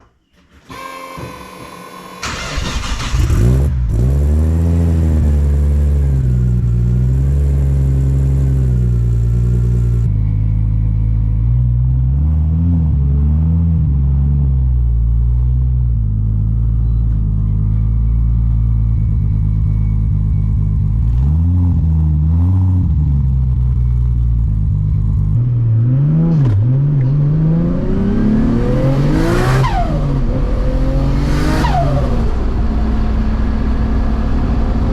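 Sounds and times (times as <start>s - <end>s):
car engine cranking and starting: 0.4s - 11.8s
car engine idling and revving: 2.2s - 34.9s.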